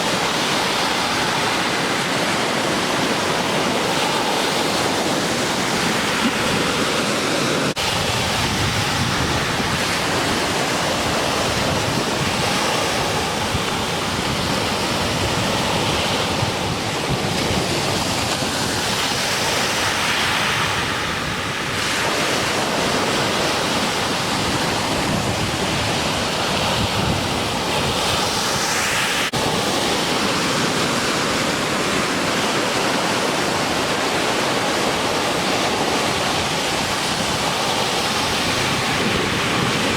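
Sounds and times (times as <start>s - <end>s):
ocean surf breaking: 0.0s - 39.9s
wind buffeting microphone: 0.0s - 39.9s.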